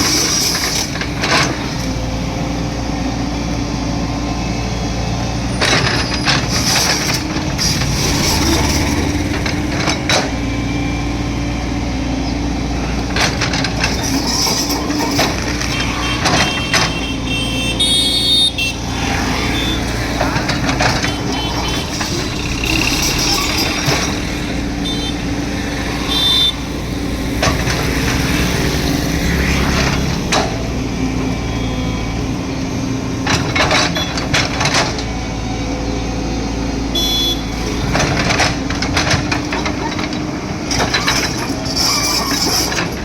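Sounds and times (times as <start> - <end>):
diesel engine drone: 0.0 - 43.0
short high squeals: 13.9 - 27.2, 40.8 - 43.0.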